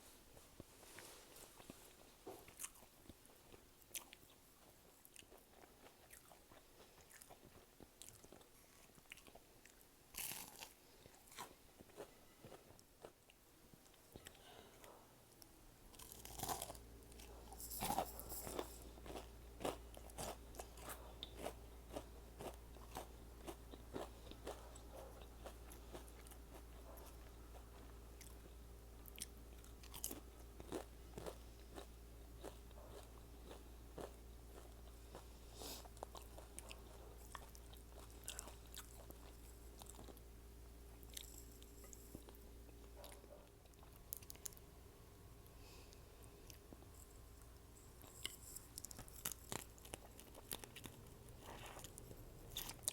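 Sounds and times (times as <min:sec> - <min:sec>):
faint low hum: 0:00.0 - 0:52.9
chewing with small crunches: 0:00.4 - 0:44.8, 0:45.4 - 0:52.9
crunching bites into fried shrimp: 0:16.0 - 0:16.8.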